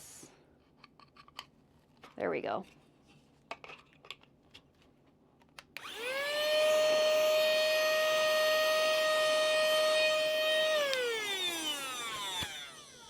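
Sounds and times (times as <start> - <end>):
vacuum cleaner motor whine: 5.8 - 13.0.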